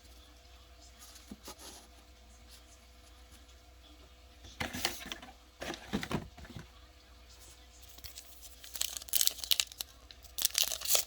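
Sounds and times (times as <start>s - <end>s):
foil wrapper crinkling and tearing: 8.0s - 11.0s.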